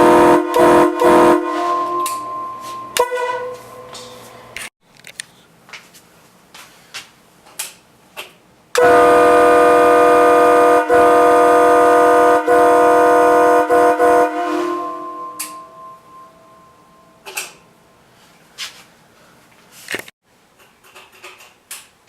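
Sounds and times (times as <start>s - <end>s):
train horn blast: 0.0s - 4.6s, 8.8s - 17.1s.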